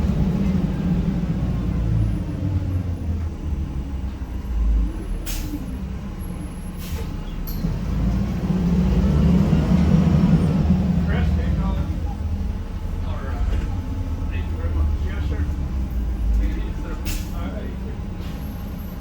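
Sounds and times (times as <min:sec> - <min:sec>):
diesel bus engine humming: 0:00.0 - 0:19.0
air brake hiss: 0:05.2 - 0:05.6, 0:06.8 - 0:07.2.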